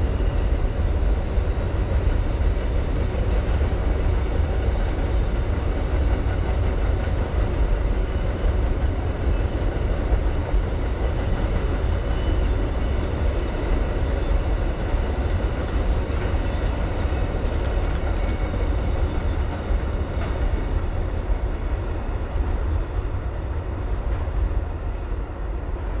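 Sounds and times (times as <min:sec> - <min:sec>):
train wheels rumbling on rail: 0:00.0 - 0:26.0
sharp clicks: 0:17.5 - 0:18.6.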